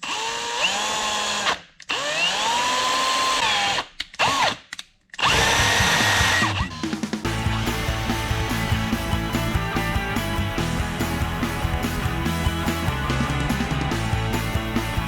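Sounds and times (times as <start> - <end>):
electric drill whining: 0.0 - 4.6, 5.2 - 9.7.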